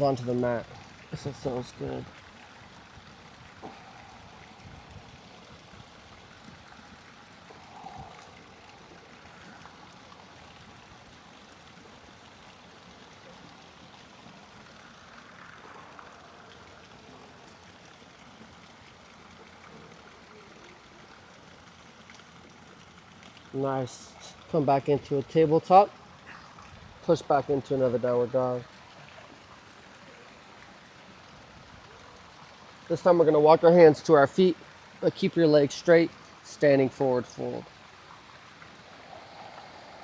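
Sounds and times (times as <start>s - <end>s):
faint rushing background noise: 12.9s - 18.5s, 32.0s - 40.0s.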